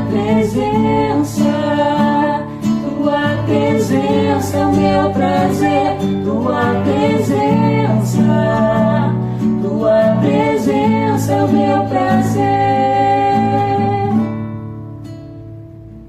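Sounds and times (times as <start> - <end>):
guitar: 0.0 - 16.0.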